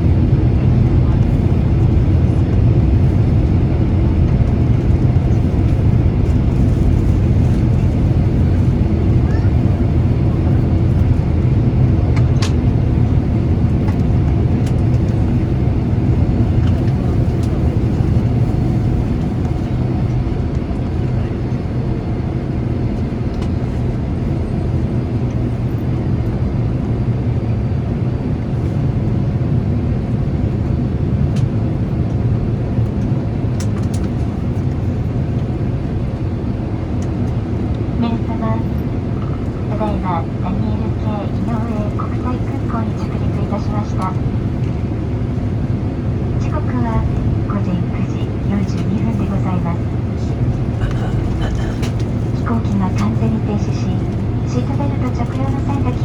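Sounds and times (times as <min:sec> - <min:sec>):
airliner cabin low rumble: 0:00.0 - 0:56.0.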